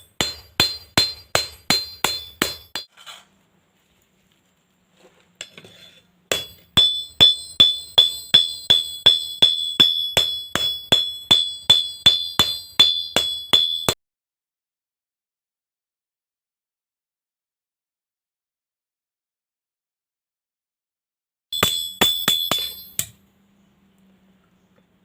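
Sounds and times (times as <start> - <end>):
hammer ringing on steel blade: 0.0 - 2.9, 6.3 - 14.0, 21.6 - 23.2.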